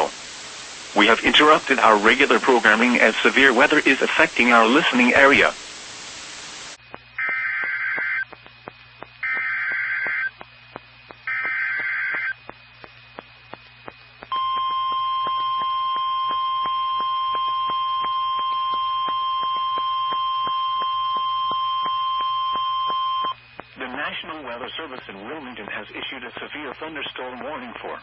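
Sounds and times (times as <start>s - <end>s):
warbling digital data bursts: 6.7s - 10.4s, 11.2s - 12.4s.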